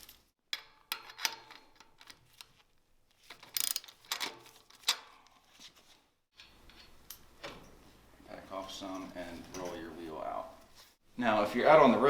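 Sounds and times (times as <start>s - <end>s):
wrench clicking and rasping: 3.4s - 4.3s.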